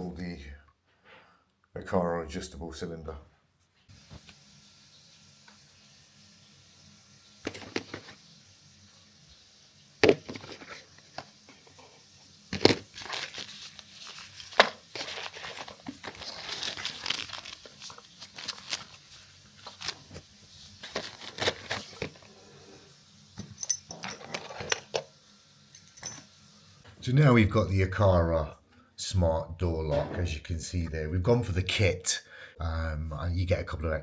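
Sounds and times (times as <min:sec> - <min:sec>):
packaging rustling and crinkling: 0:12.6 - 0:22.3.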